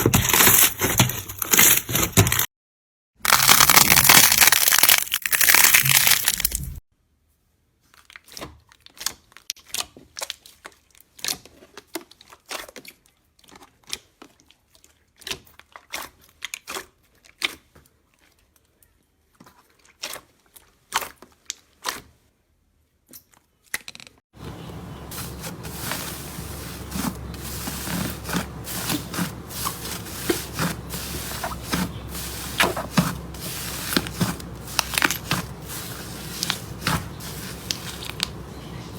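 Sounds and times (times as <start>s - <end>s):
dense crushing noise: 0.0s - 2.5s, 3.2s - 6.8s, 24.4s - 38.9s.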